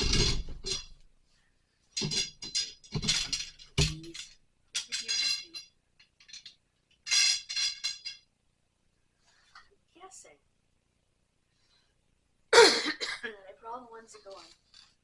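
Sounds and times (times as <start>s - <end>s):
drying rack parts clinking: 0.0s - 1.1s, 2.0s - 8.3s.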